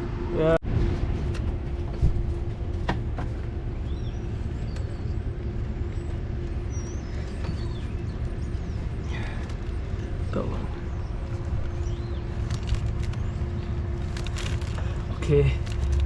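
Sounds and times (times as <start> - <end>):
steady hum: 0.0 - 16.0
vehicle engine rumbling: 0.0 - 16.0.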